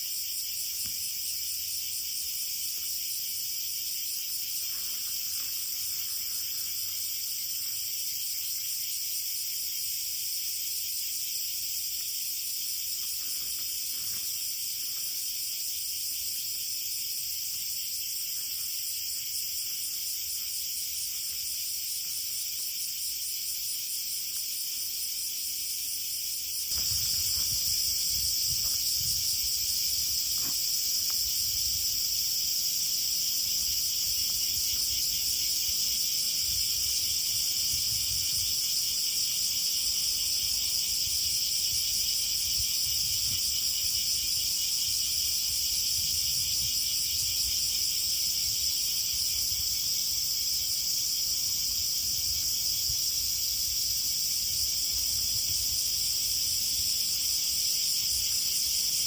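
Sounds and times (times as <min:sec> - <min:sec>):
crickets and insects chirring: 0:00.0 - 0:59.0.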